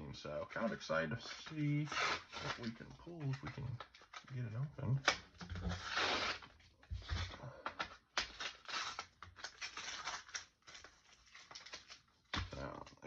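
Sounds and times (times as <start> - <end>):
foil tearing rustle: 0.6 - 4.4, 5.4 - 7.3, 8.2 - 12.8
foil wrapper crinkling: 0.6 - 13.0.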